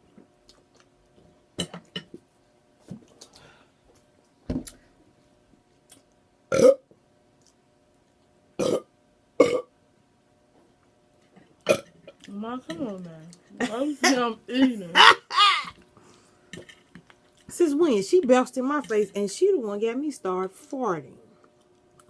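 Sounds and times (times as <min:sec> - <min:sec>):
person burping: 0:06.5 - 0:06.9, 0:08.6 - 0:09.7, 0:11.6 - 0:11.9, 0:14.6 - 0:15.8.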